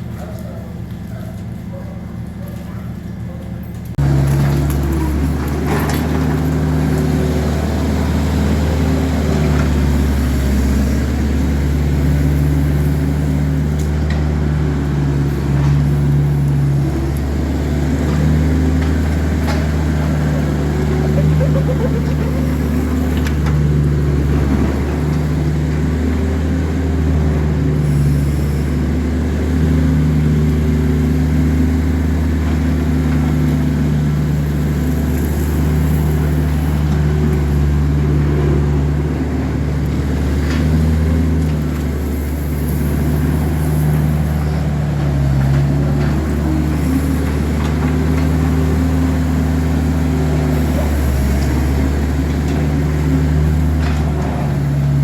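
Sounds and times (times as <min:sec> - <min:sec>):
motor humming: 0:04.0 - 0:25.6.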